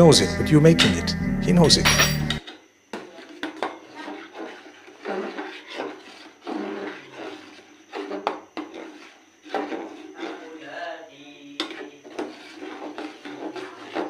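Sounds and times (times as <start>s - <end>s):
utensils clinking against dishes: 1.8s - 2.4s.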